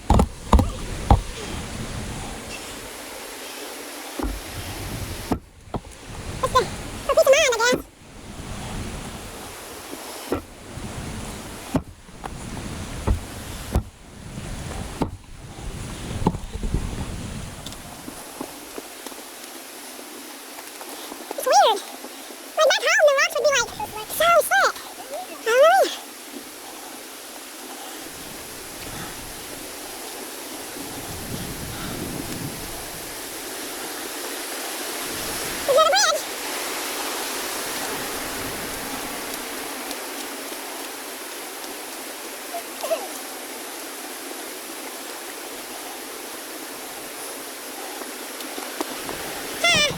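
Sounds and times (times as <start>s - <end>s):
sharp knocks: 0.0s - 1.3s
wind rumbling on microphone: 0.0s - 3.4s, 4.2s - 7.2s, 7.8s - 18.8s, 28.0s - 40.5s, 48.9s - 49.9s
stream rushing over rocks: 0.0s - 49.9s
wavering voice-like call: 49.6s - 49.9s.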